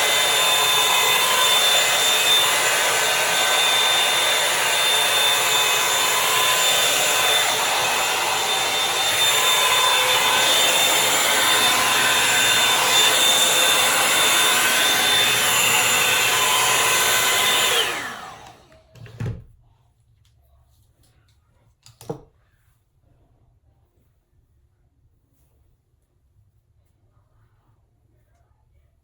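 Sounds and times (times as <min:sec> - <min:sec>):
hot-air brush dryer whining: 0:00.0 - 0:19.0.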